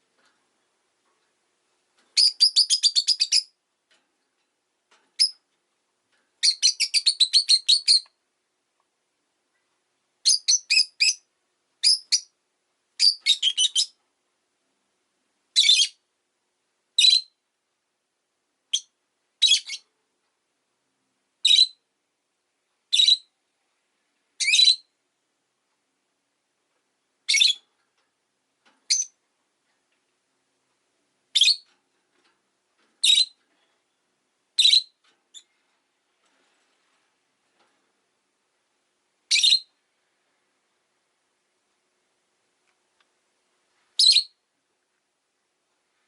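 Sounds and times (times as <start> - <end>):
lovebird chirping: 2.2 - 3.6, 5.2 - 5.4, 6.4 - 8.2, 10.2 - 12.4, 13.0 - 14.0, 15.6 - 16.0, 17.0 - 17.4, 18.7 - 19.9, 21.4 - 21.8, 22.9 - 23.4, 24.4 - 24.9, 27.2 - 27.7, 28.9 - 29.2, 31.3 - 31.7, 33.0 - 33.4, 34.6 - 35.6, 39.3 - 39.8, 44.0 - 44.4.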